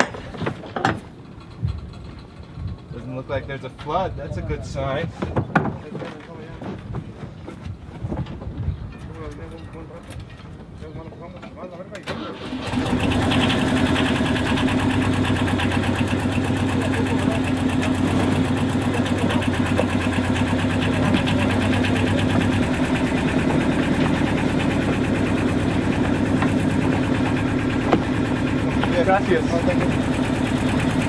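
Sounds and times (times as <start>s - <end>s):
boat engine running: 12.4s - 31.0s.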